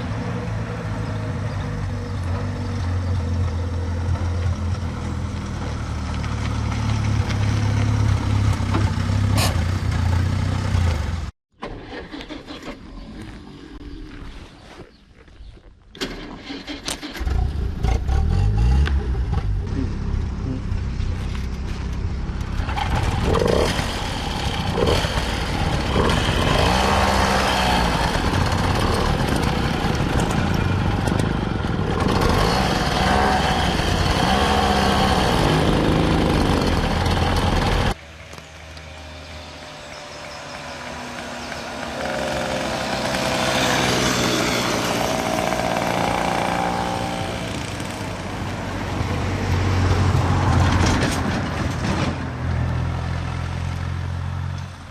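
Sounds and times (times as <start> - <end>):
moped engines revving: 16.4 - 51.5.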